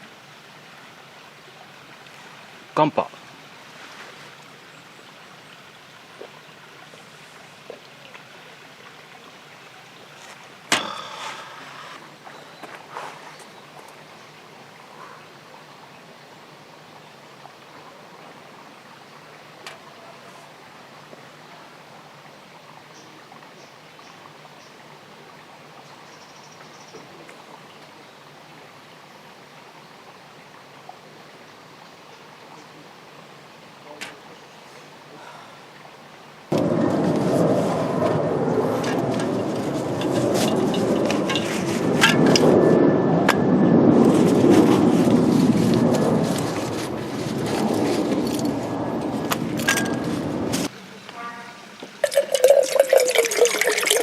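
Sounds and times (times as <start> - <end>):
background hiss: 0.0 - 36.6
rushing background noise: 36.5 - 50.7.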